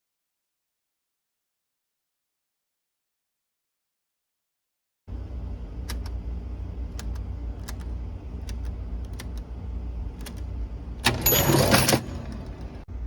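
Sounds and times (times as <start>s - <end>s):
steady low hum: 5.1s - 13.0s
cash register keys clicking: 6.9s - 9.5s, 10.1s - 12.8s
loud mechanical rattle: 11.0s - 12.8s.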